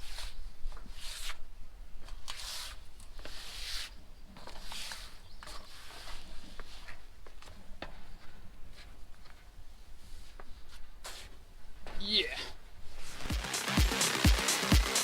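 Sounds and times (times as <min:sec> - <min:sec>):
clothing rustling and rubbing: 0:00.0 - 0:11.9, 0:12.7 - 0:13.3.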